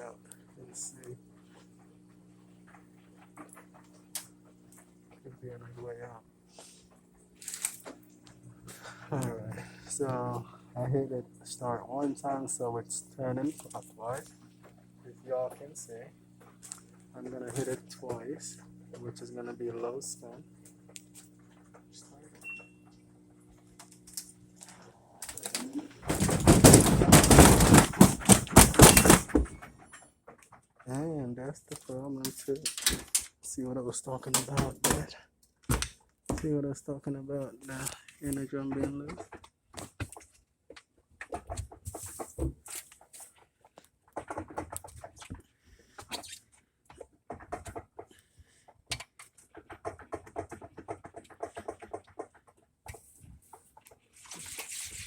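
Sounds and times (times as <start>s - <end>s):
washing machine drum banging: 26.0s - 29.6s
rapid rattling and knocking: 26.0s - 30.6s, 44.1s - 45.5s, 49.2s - 54.0s.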